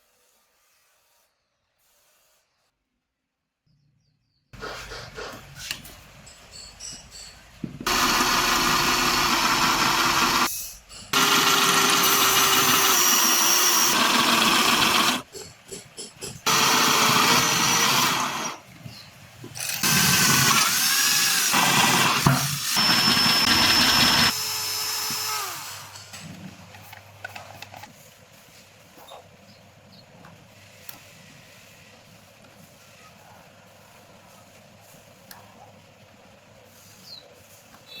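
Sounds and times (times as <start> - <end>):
power tool running: 7.8 - 10.5, 11.1 - 15.3, 16.4 - 18.6, 19.6 - 26.1.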